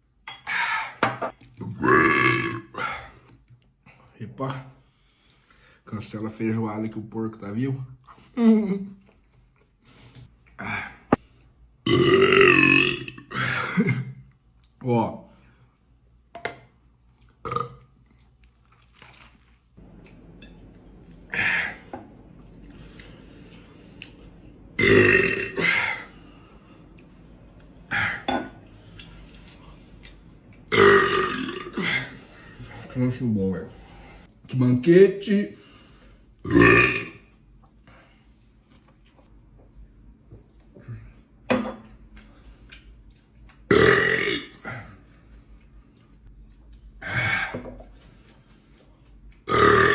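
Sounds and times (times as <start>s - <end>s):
man burping: 1.6s - 3.0s, 11.9s - 14.2s, 17.4s - 17.8s, 24.8s - 26.1s, 30.7s - 32.2s, 36.4s - 37.2s, 43.7s - 44.9s, 49.5s - 49.9s.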